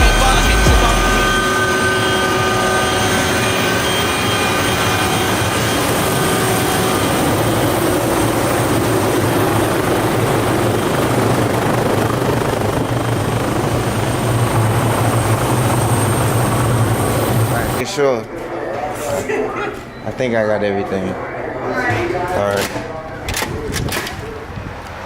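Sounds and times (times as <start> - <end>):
helicopter rotor and engine: 0.0 - 17.9.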